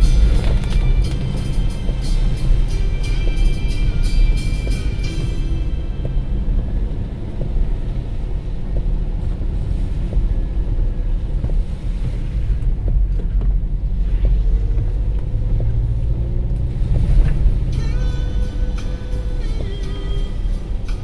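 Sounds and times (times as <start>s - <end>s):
light rain ticks: 0.0s - 21.0s
wind buffeting microphone: 0.0s - 21.0s.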